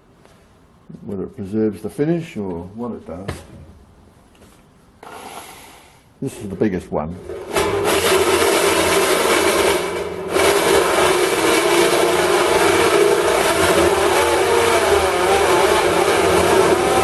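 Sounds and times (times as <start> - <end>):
drill gearbox whine: 7.2 - 17.0
electric drill cutting steel: 7.3 - 17.0.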